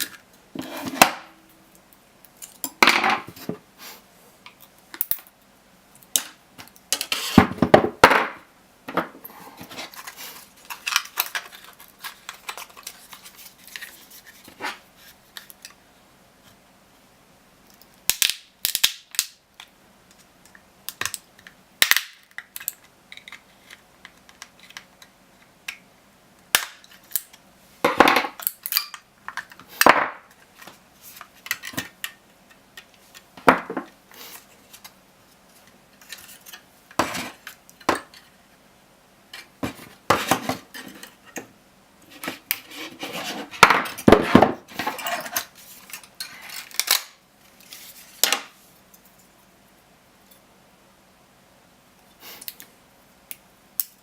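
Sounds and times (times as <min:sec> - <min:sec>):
scraping and handling noise: 0:00.0 - 0:05.4, 0:06.0 - 0:15.8, 0:22.2 - 0:25.8, 0:26.8 - 0:38.6, 0:39.3 - 0:49.5.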